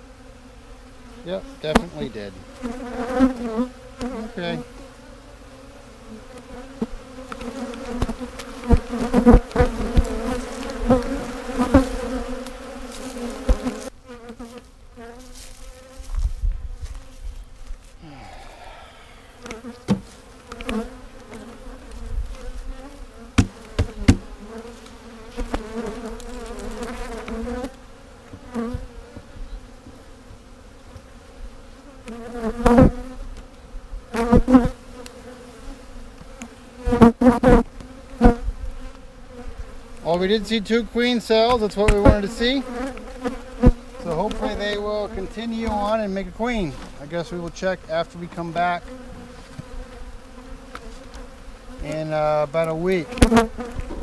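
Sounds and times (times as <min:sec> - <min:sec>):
bees buzzing: 0:00.0 - 0:54.0
hive handling knocks: 0:01.7 - 0:02.1, 0:07.3 - 0:11.7, 0:19.4 - 0:21.6, 0:23.4 - 0:24.3, 0:41.4 - 0:46.0, 0:52.6 - 0:54.0.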